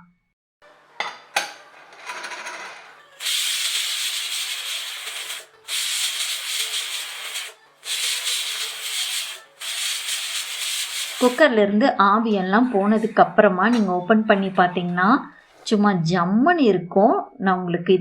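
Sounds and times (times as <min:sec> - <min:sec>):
faint steam hiss: 0:03.2 - 0:11.4
pressure cooker whistling: 0:03.2 - 0:11.4
valve click: 0:03.2 - 0:11.4.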